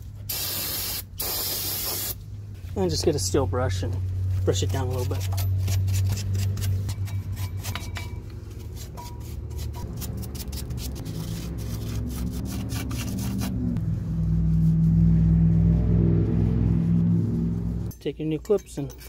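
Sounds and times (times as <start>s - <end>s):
low steady rumble: 2.2s - 18.8s
wire brush scrubbing metal: 4.5s - 13.6s.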